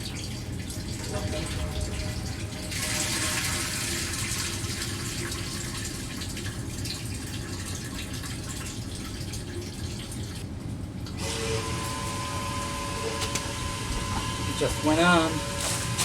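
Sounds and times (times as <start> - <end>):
water running into pump basin: 0.0 - 16.0
steady tone: 1.0 - 3.9.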